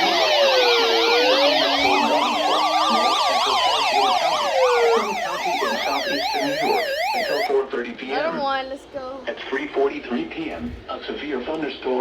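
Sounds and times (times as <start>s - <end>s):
siren fast yelp: 0.0s - 7.5s
siren slow wail: 0.0s - 7.5s.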